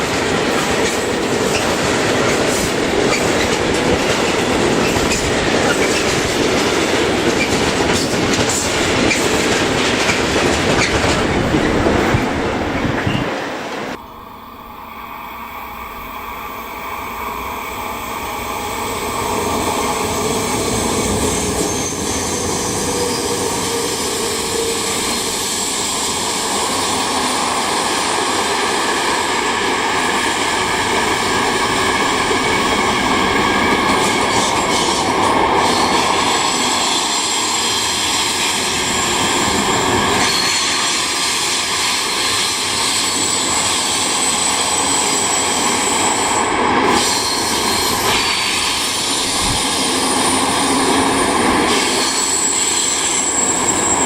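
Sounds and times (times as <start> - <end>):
train wagons rumbling: 0.0 - 14.0
locomotive whine: 0.0 - 54.0.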